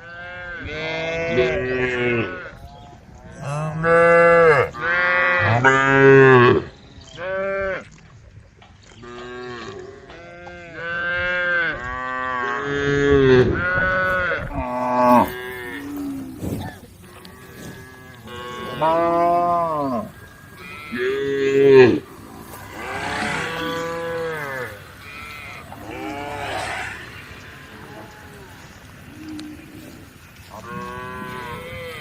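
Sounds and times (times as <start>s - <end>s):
cows mooing: 3.3s - 7.8s, 9.0s - 32.0s.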